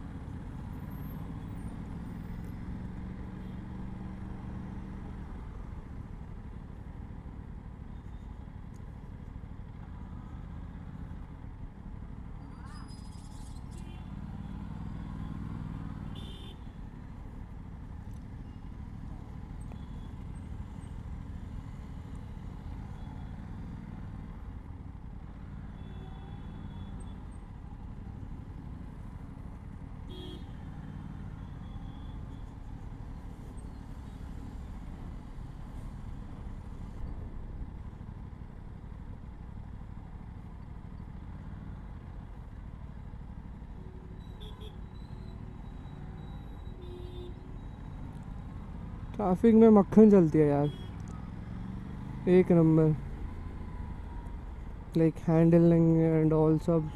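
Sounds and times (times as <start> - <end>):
car horn toots: 16.1 - 16.6, 30.1 - 30.5, 44.2 - 44.8, 46.8 - 47.4, 50.6 - 51.1.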